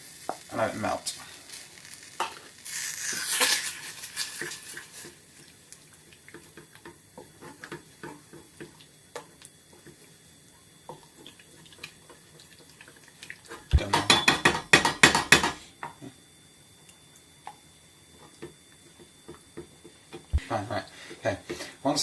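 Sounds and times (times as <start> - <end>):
hiss in saucepan: 0.0 - 16.2.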